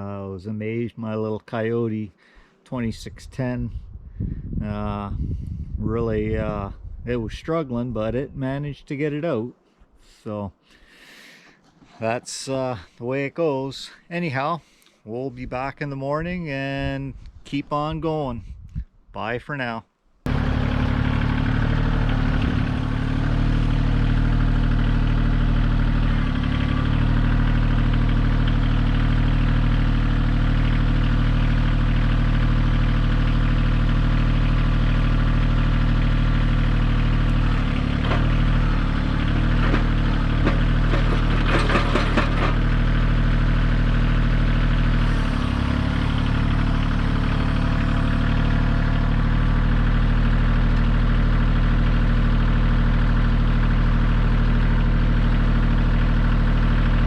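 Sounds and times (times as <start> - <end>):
tractor diesel engine running: 20.3 - 57.0
clattering knocks: 39.7 - 42.6.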